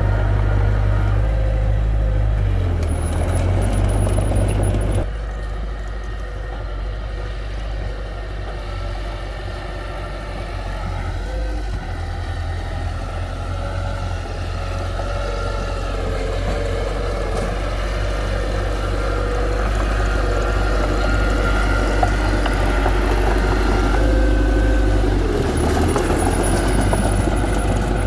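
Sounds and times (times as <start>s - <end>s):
heavy diesel engine running: 0.0s - 28.0s.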